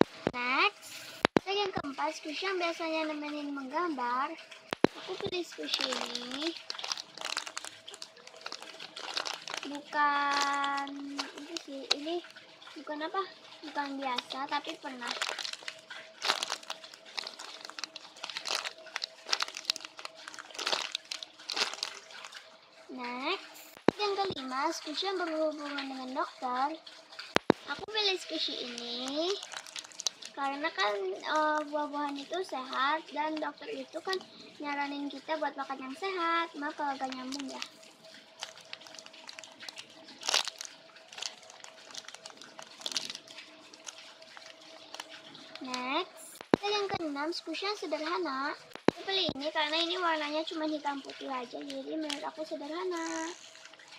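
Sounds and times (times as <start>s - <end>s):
faint steady hum: 0.0s - 53.9s
plastic crinkling: 4.6s - 22.5s, 27.1s - 34.3s, 36.0s - 53.9s
small clicks: 53.0s - 53.8s.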